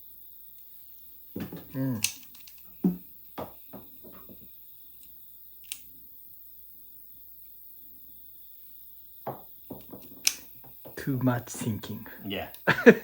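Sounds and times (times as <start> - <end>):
faint steady high hiss: 0.0 - 13.0
soft knocks: 9.2 - 11.0.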